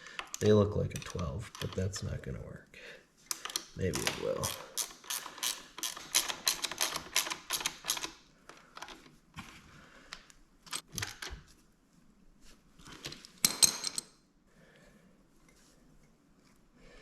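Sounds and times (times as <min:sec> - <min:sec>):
socket ratchet clicking: 0:04.4 - 0:08.2.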